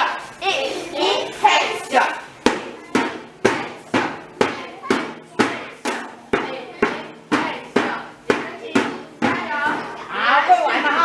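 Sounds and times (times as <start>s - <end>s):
drum struck in steady beat: 2.4s - 9.9s.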